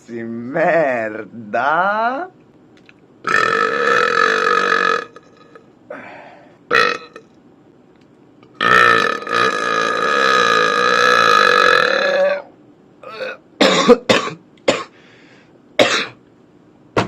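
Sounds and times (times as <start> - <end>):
long drawn-out burp: 3.2 - 5.6, 6.7 - 7.2, 8.6 - 14.2.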